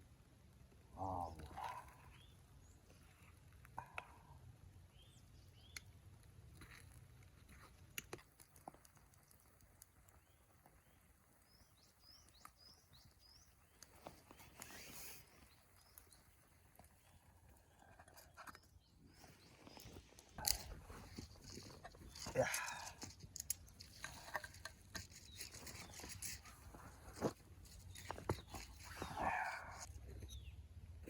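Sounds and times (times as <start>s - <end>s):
small bird chirping: 4.9s - 5.9s, 9.4s - 22.8s, 27.7s - 30.6s.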